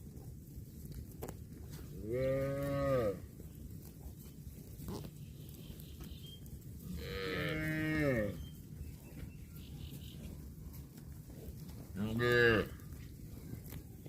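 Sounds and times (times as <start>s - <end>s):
cow mooing: 2.0s - 3.2s, 7.0s - 8.4s, 12.0s - 12.8s.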